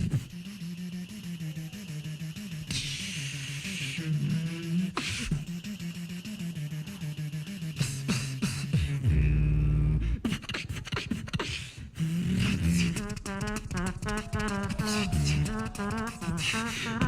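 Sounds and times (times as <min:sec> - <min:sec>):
beatboxing: 0:00.0 - 0:17.0
hummed melody: 0:12.6 - 0:17.0.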